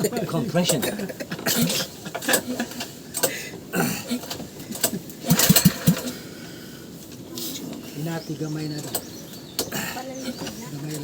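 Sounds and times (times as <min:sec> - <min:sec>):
boat engine pull-start cranking: 0:00.6 - 0:06.3.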